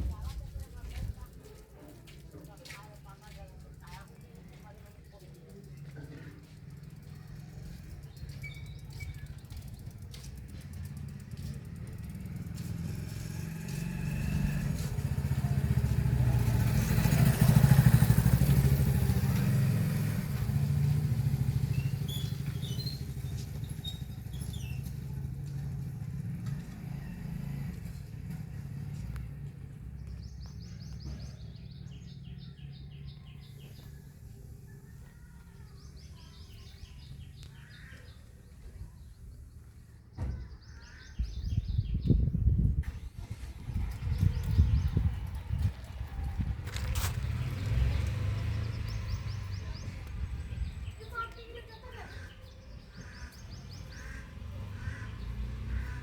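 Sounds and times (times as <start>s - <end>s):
vehicle engine passing by: 5.5s - 38.8s, 40.9s - 56.0s.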